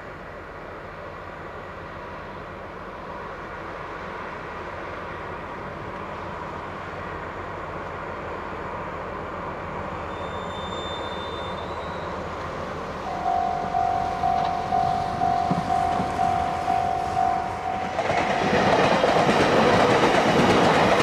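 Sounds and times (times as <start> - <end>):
steady background rumble: 12.8 - 18.4
level crossing warning bell: 13.1 - 19.7.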